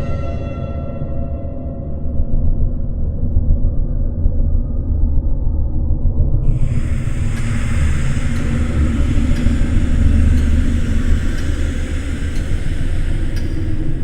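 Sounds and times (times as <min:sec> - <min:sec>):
deep rumbling drone: 0:06.4 - 0:14.0
faint ticks: 0:06.5 - 0:14.0
hiss: 0:06.5 - 0:14.0.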